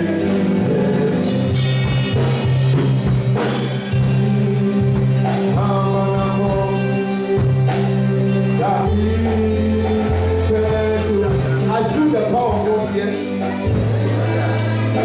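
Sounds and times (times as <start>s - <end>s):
person singing: 0.0s - 2.6s, 3.6s - 15.0s
gospel band music: 0.0s - 15.0s.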